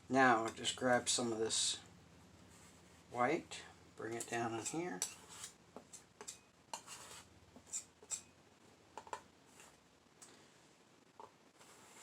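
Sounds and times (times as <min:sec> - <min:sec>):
painting knife scraping paint: 0:04.2 - 0:08.3.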